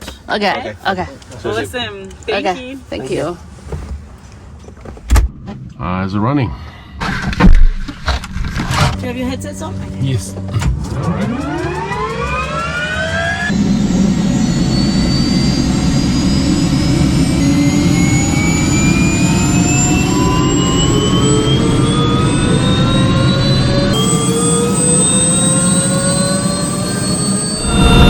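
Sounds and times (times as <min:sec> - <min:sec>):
helicopter engine and rotor: 0:09.0 - 0:28.0.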